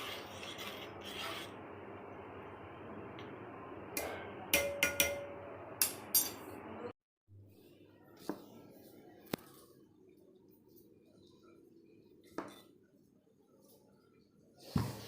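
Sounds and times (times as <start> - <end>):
utensils and crockery clinking: 4.0 - 6.6.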